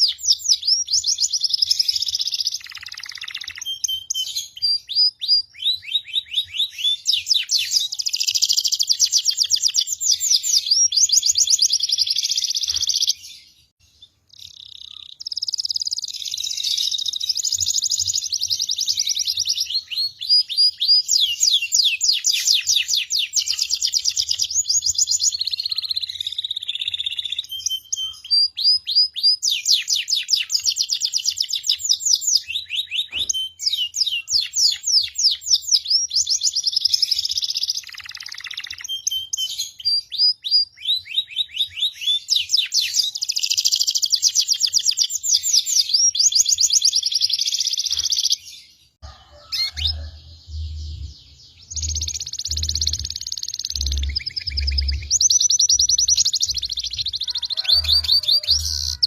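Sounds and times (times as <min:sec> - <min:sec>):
songbirds singing fast trills: 0:00.0 - 0:59.0.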